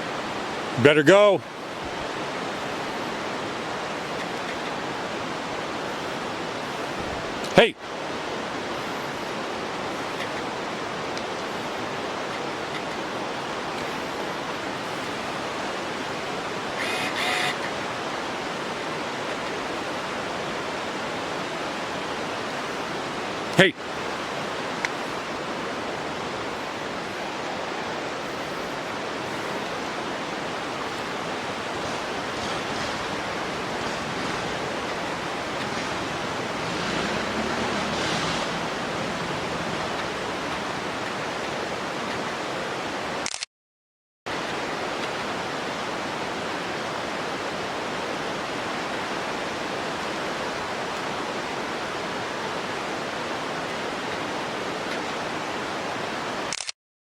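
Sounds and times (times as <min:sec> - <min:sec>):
steady rushing noise: 0:00.0 - 0:43.0.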